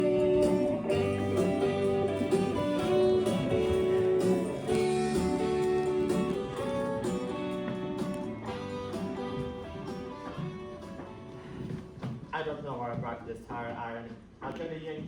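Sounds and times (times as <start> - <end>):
instrumental music with held notes: 0.0 - 12.0.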